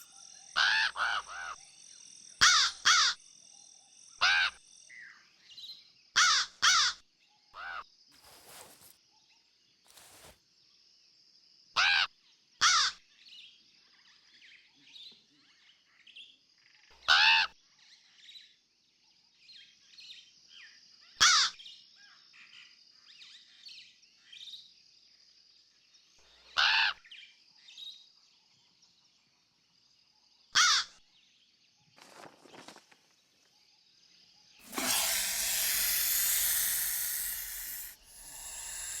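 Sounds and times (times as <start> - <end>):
steady high-pitched tone: 0.0 - 0.6, 34.6 - 39.0.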